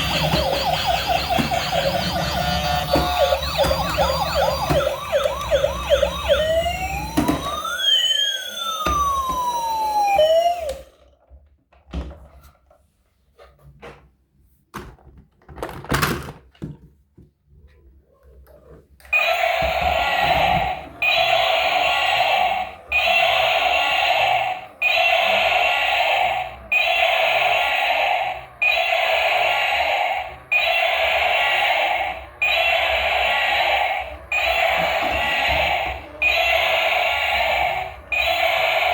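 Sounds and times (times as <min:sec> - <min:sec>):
plastic toys knocking and clicking: 0:00.0 - 0:05.4, 0:14.8 - 0:17.3
buzzy electronic tone: 0:00.0 - 0:07.8
toy electronic siren: 0:00.0 - 0:11.0, 0:19.1 - 0:38.9.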